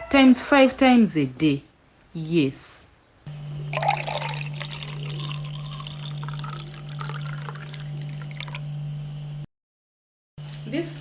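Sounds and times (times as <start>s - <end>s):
steady low hum: 2.9s - 9.5s
liquid pouring and splashing: 3.7s - 8.7s.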